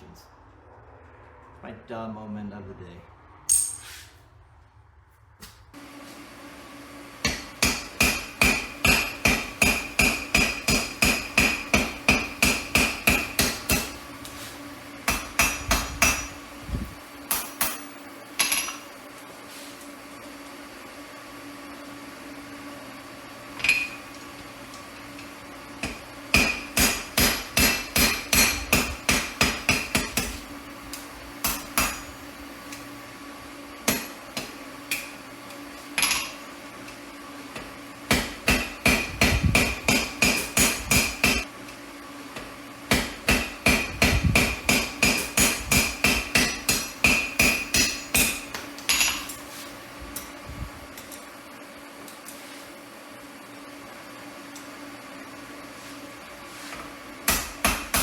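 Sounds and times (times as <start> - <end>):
hammer striking steel anvil: 3.5 - 4.0, 7.2 - 14.0, 15.1 - 16.4, 25.8 - 30.4, 31.4 - 32.2, 38.1 - 41.4, 42.9 - 49.4, 57.3 - 58.0.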